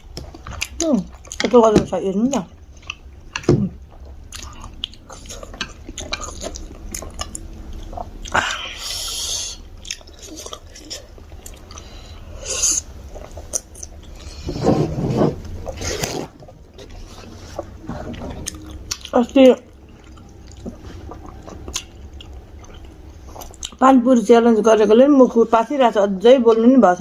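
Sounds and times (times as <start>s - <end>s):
chewing and wet mouth clicks: 2.3s - 8.4s, 9.7s - 12.0s, 12.8s - 14.2s, 17.6s - 23.8s.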